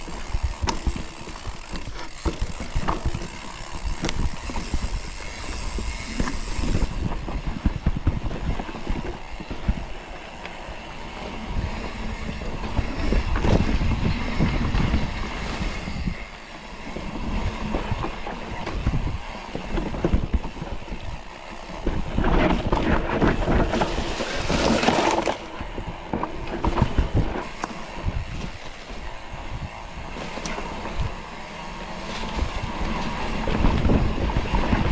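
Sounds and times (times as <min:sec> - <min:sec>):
mountain bike rattling over trail: 0:00.0 - 0:34.9
rough rushing noise: 0:21.9 - 0:25.8.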